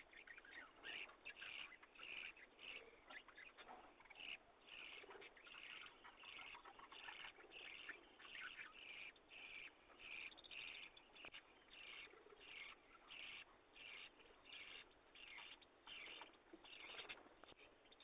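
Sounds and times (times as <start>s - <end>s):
bird calling: 0.0s - 18.0s.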